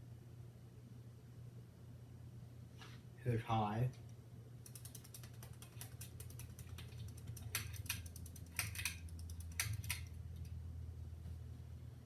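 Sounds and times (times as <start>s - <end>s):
ceiling fan motor hum: 0.0s - 12.0s
irregular light clicks: 4.6s - 10.6s.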